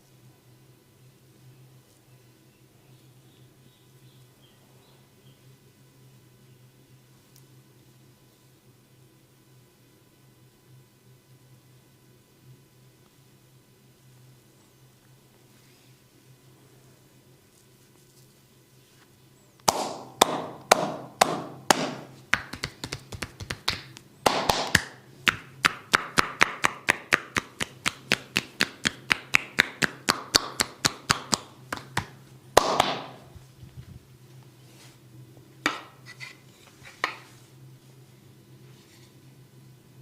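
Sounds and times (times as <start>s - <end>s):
hands slapping skin: 19.6s - 33.2s.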